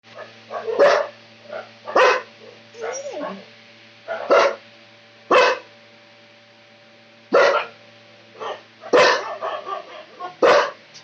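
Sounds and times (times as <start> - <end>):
dog barking: 0.2 - 3.5, 4.1 - 4.6, 5.3 - 5.7, 7.3 - 7.8, 8.4 - 10.8
dog yelping: 2.8 - 3.5.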